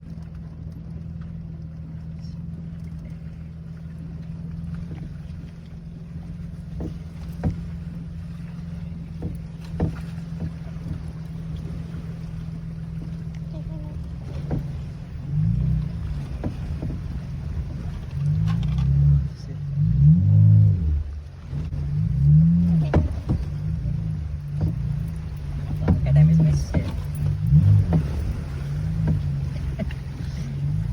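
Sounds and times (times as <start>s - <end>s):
car engine running: 0.0s - 30.9s.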